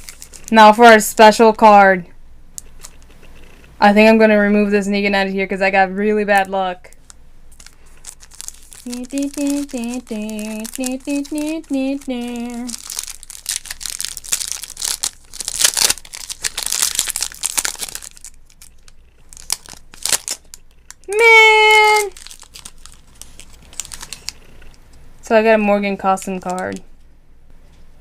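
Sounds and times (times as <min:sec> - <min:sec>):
card pack wrapper crinkling: 0:00.0 - 0:00.6, 0:06.9 - 0:24.6, 0:26.0 - 0:26.8
woman humming: 0:08.8 - 0:12.8, 0:21.0 - 0:22.2.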